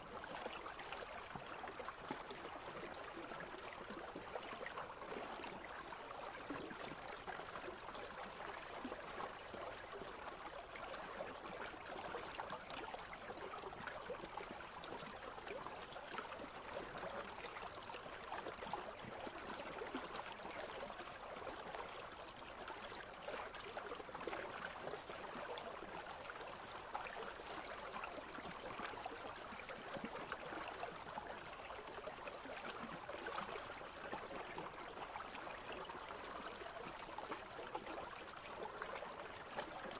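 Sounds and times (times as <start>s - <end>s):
stream babbling: 0.1s - 39.9s.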